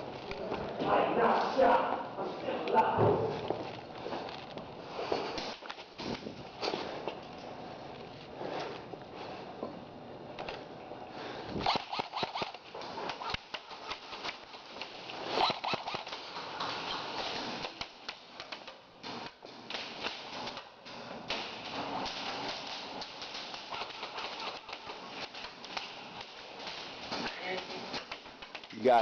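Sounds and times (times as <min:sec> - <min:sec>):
airsoft shots: 0:11.6 - 0:14.4.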